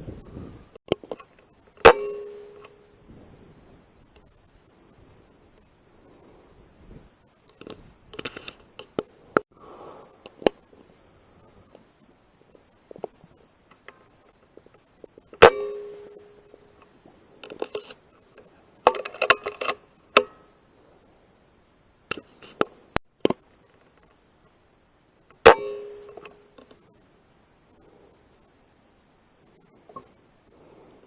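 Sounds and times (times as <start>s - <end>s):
brief ringing tone: 1.8s - 3.6s, 15.4s - 16.8s, 25.4s - 27.0s
small clicks and knocks: 12.5s - 20.4s.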